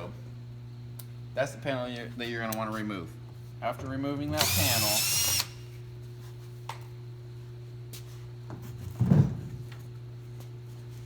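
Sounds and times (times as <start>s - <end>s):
steady low hum: 0.0s - 11.0s
power driver whining: 4.3s - 5.6s.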